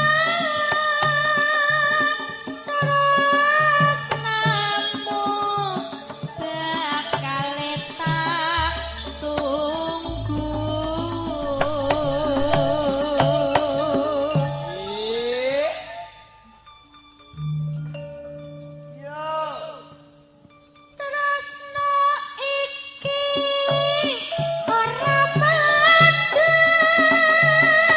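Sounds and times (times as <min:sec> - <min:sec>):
hand drum strokes: 0:00.0 - 0:20.6, 0:23.1 - 0:27.9
person singing wavering melody: 0:00.0 - 0:27.9
deep sustained bass note: 0:08.6 - 0:15.0.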